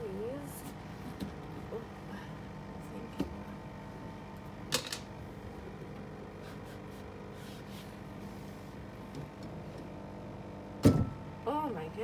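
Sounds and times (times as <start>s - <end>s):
steady low hum: 0.0s - 12.0s
clicks and knocks of fridge parts: 10.8s - 11.3s.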